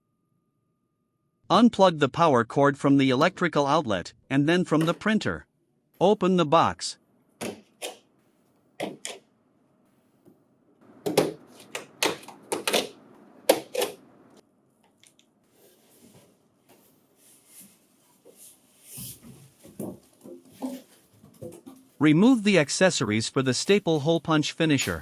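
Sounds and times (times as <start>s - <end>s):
cardboard rustling and scraping: 15.5s - 22.0s.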